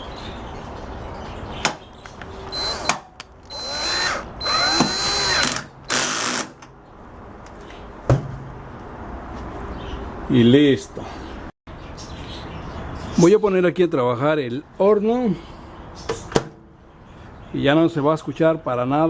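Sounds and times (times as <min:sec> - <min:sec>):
electric screwdriver running: 0:02.5 - 0:06.5.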